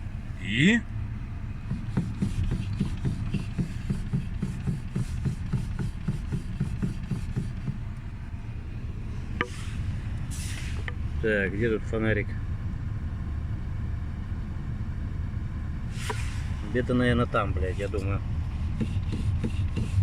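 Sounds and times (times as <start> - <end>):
car engine rumble: 0.0 - 20.0
rapid regular knocking: 1.5 - 8.3, 17.4 - 20.0.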